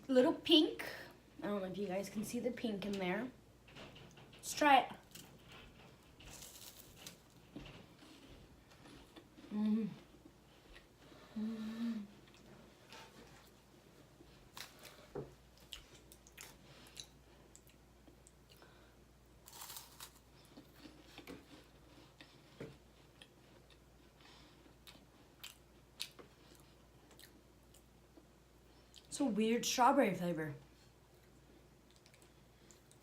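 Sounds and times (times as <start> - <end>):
person chewing crisp cookies: 5.1 - 13.6, 14.2 - 29.1, 30.9 - 33.0.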